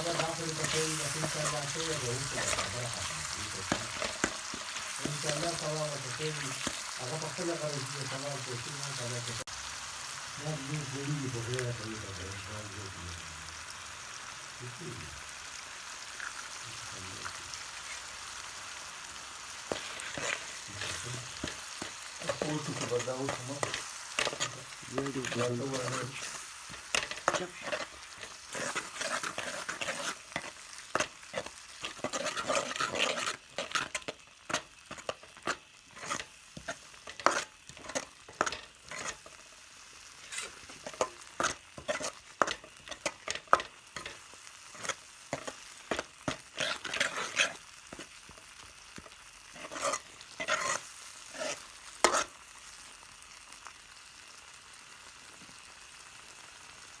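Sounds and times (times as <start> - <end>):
spoon scraping and knocking pan: 0.0 - 9.4, 19.4 - 52.9
food sizzling in a pan: 0.0 - 57.0.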